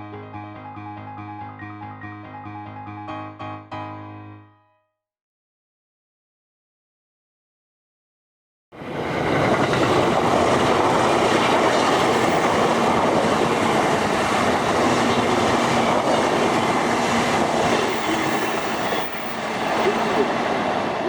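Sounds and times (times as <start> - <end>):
train running on rails: 8.8 - 21.0.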